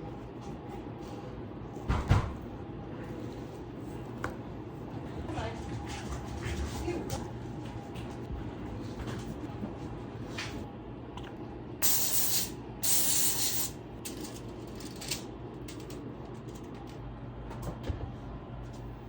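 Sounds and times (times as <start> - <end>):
hissing spray bursts: 11.8 - 13.7.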